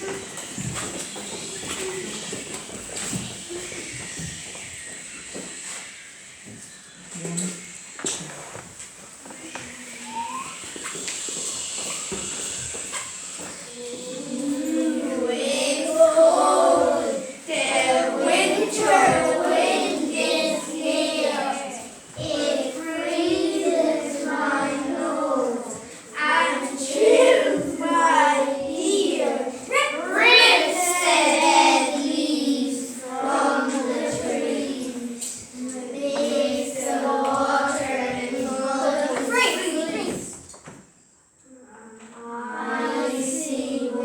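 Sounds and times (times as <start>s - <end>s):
children singing together: 9.4s - 40.4s, 41.8s - 44.0s.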